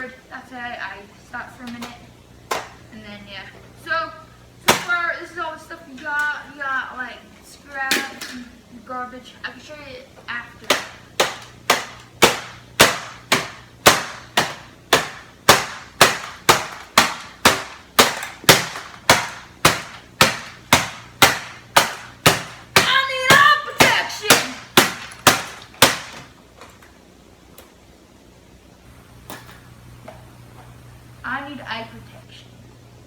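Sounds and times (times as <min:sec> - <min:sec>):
hammer striking plastic casing: 0:02.5 - 0:02.8, 0:04.7 - 0:05.0, 0:10.6 - 0:26.8.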